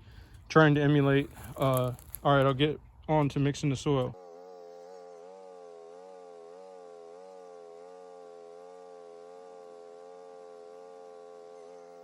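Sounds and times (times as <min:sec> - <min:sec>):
small engine running: 0:04.1 - 0:12.0.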